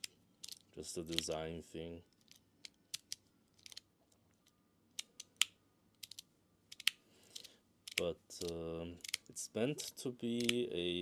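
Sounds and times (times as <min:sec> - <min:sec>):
magnetic fidget slider clicking: 0:02.3 - 0:03.8, 0:05.0 - 0:09.3, 0:10.3 - 0:10.6.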